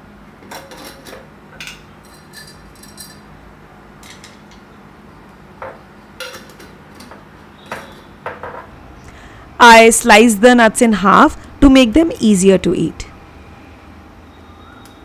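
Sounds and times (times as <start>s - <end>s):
metal cookware clinking: 0.5s - 3.3s.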